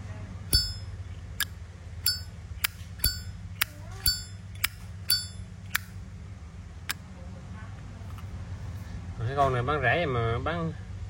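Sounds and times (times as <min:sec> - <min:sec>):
bell-like ting: 0:00.5 - 0:01.0, 0:02.1 - 0:02.3.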